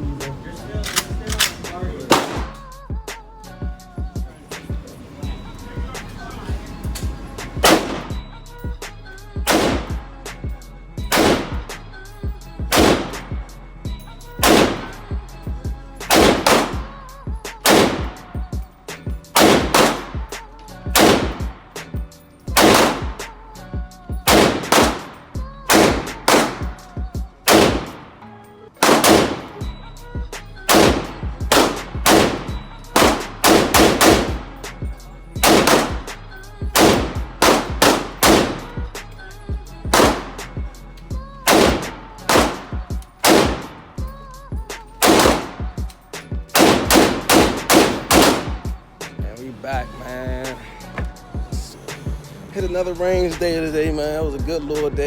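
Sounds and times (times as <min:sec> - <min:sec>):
background music with low bass: 0:00.0 - 0:55.0
semi-automatic gunshots: 0:00.6 - 0:02.6, 0:06.9 - 0:08.3, 0:09.4 - 0:10.0, 0:11.1 - 0:11.8, 0:12.7 - 0:13.4, 0:14.4 - 0:15.1, 0:16.1 - 0:17.0, 0:17.6 - 0:18.6, 0:19.3 - 0:21.7, 0:22.6 - 0:23.4, 0:24.2 - 0:28.2, 0:28.8 - 0:29.7, 0:30.7 - 0:38.9, 0:39.9 - 0:40.8, 0:41.4 - 0:44.1, 0:45.0 - 0:53.9.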